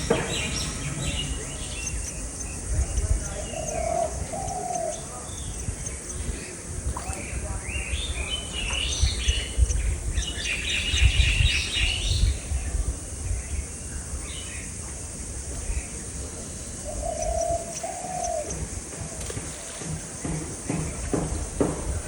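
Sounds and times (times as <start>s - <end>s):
lower-pitched bird call: 0.0s - 12.4s, 16.8s - 18.6s
small birds chirping: 0.0s - 22.0s.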